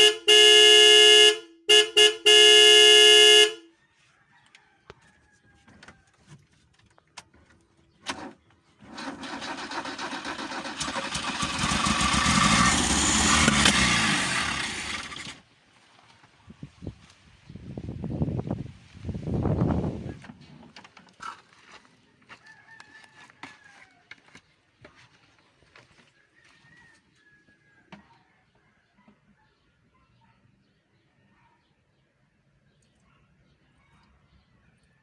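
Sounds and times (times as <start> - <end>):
car horn blasts: 0.0 - 3.7
car engine cranking: 8.0 - 15.4.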